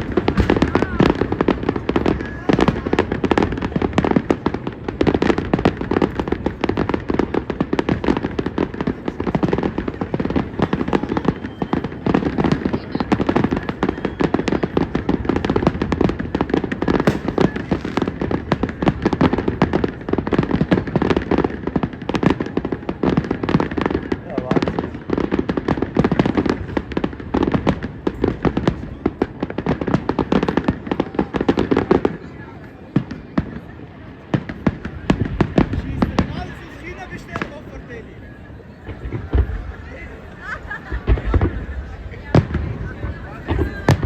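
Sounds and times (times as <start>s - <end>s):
fireworks and firecrackers bangs: 0.0s - 44.0s.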